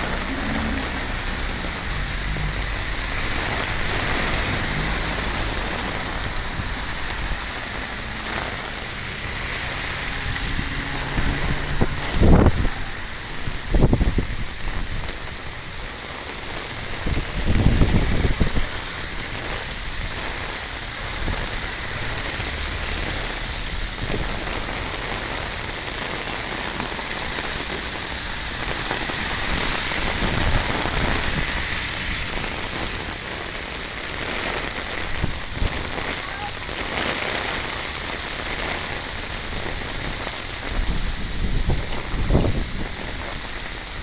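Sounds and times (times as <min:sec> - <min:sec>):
low rumble: 0:00.0 - 0:03.1
steady rain falling: 0:00.0 - 0:44.0.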